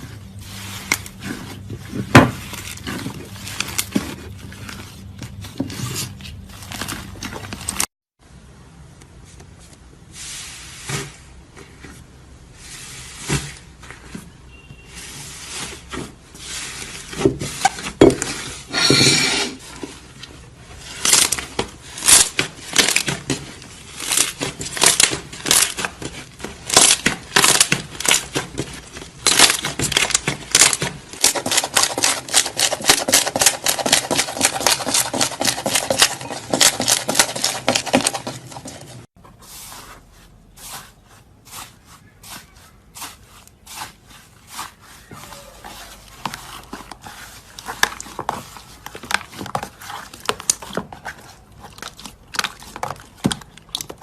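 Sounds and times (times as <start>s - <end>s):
crunchy slime crackling: 20.7s - 39.2s, 40.7s - 54.0s.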